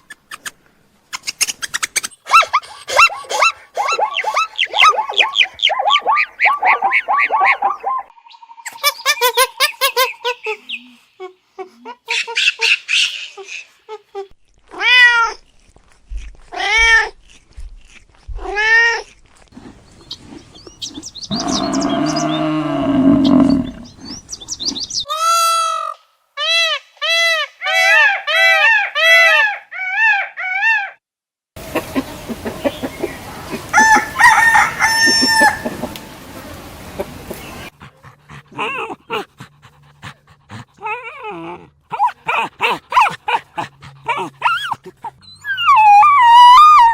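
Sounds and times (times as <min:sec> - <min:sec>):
farm animal calls: 0:19.6 - 0:25.4.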